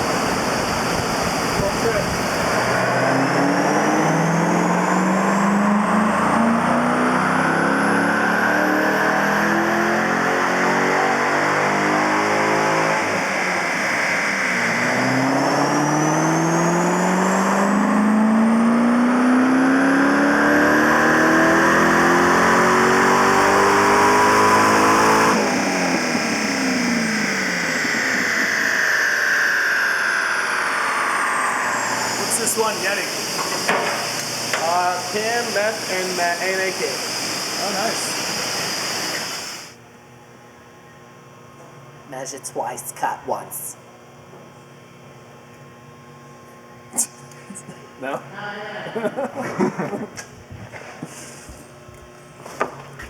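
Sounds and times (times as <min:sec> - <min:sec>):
car engine revving: 0:00.0 - 0:39.8
supercharger whine: 0:00.0 - 0:53.0.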